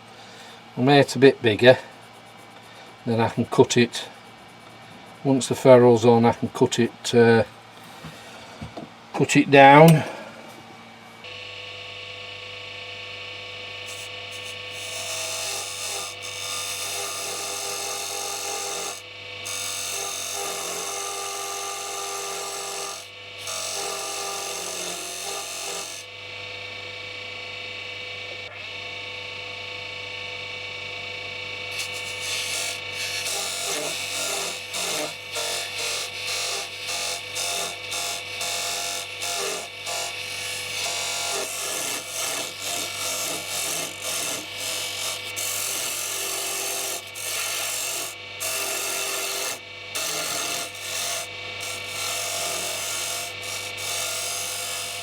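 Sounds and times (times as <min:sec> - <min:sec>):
wood lathe motor hum: 0:09.8 - 0:55.0
lathe tool rasping wood: 0:13.6 - 0:26.1, 0:31.7 - 0:55.0.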